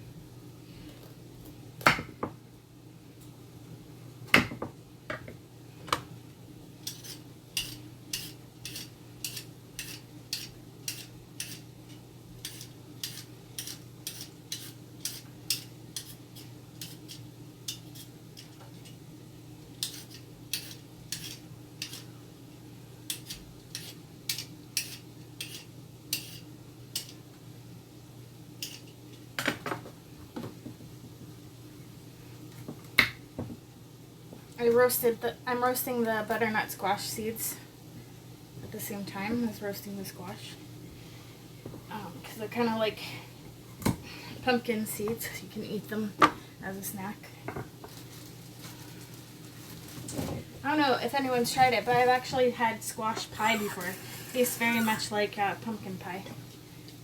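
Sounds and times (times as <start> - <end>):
kitchen utensils and dishes clinking: 53.2 - 55.2.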